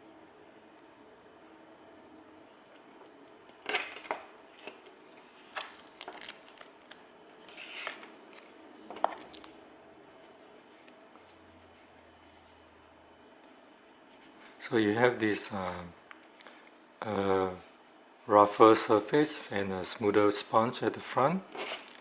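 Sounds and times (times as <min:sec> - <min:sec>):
scratchy foam rustles: 0:10.1 - 0:15.9.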